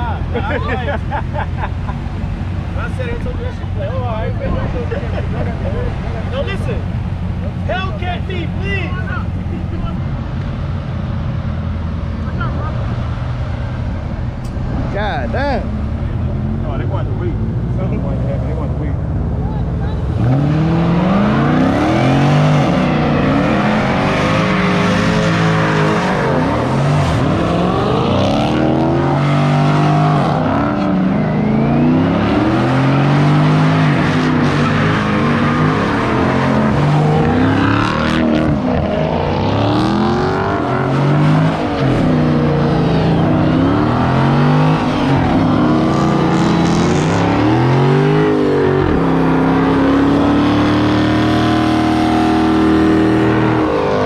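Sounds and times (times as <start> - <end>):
car engine revving hard: 19.9 - 54.0.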